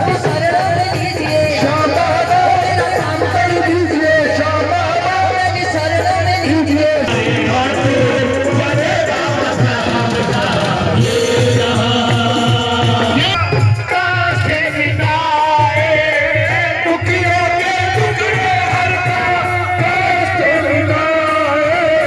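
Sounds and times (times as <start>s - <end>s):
voices singing: 0.0s - 22.0s.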